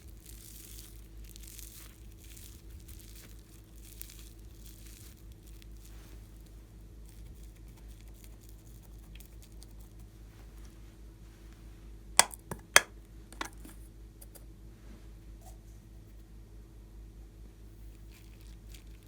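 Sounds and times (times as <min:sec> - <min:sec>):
slime squishing and crackling: 0:00.0 - 0:10.7, 0:17.8 - 0:19.0.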